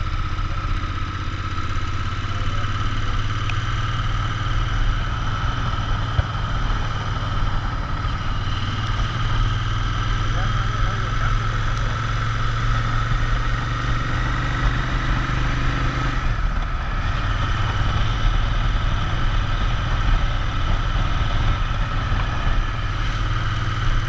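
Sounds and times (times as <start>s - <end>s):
motorcycle engine running: 0.0s - 24.0s.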